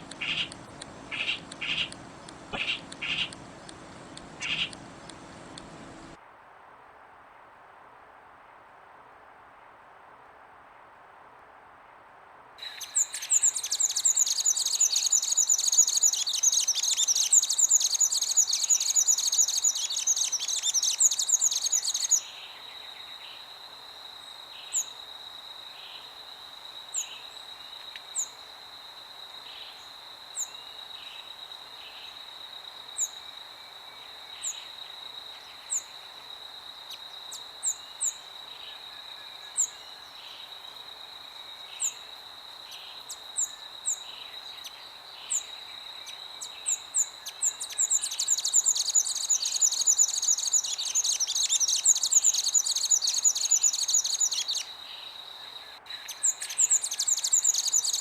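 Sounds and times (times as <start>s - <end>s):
sharp bird chirps: 0.0s - 6.2s, 46.7s - 54.7s, 56.0s - 58.0s
songbirds chattering chorus: 0.0s - 6.2s, 12.6s - 22.4s, 42.7s - 58.0s
faint wind: 0.0s - 58.0s.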